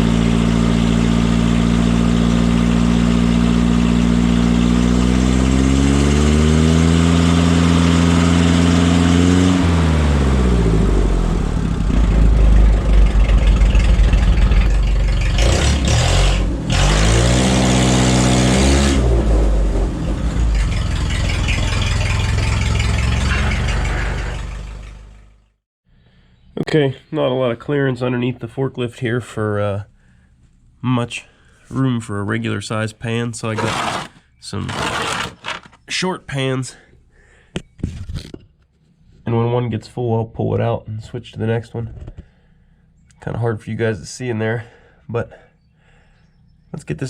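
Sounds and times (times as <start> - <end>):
forklift engine revving: 0.0 - 25.6, 33.6 - 35.7.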